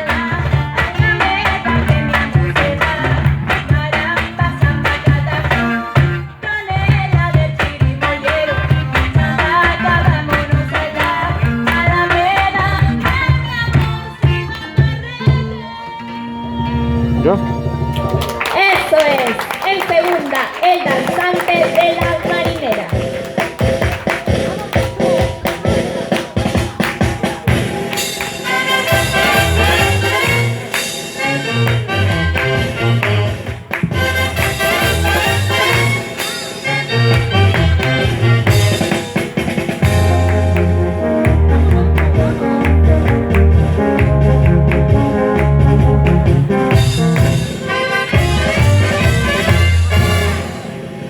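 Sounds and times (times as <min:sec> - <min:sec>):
percussion beat: 0:00.0 - 0:15.5, 0:17.8 - 0:50.8
brass band music: 0:16.8 - 0:51.0
drum strokes: 0:21.2 - 0:51.0
horns playing sustained notes: 0:27.9 - 0:39.2, 0:39.8 - 0:51.0
pulsing bass line: 0:39.8 - 0:47.6
person singing: 0:39.9 - 0:44.2.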